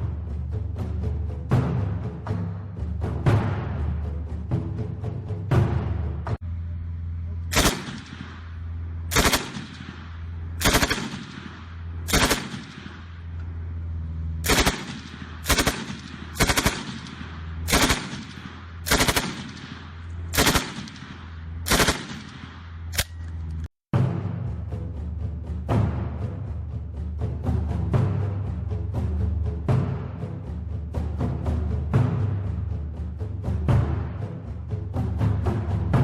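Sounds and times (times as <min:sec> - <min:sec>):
machine gun bursts: 0:07.5 - 0:08.1, 0:09.1 - 0:09.8, 0:10.6 - 0:11.3, 0:12.1 - 0:12.8, 0:14.4 - 0:19.6, 0:20.3 - 0:21.0, 0:21.6 - 0:22.3
ringing gunfire echo: 0:07.5 - 0:08.5, 0:09.1 - 0:13.1, 0:14.4 - 0:23.2.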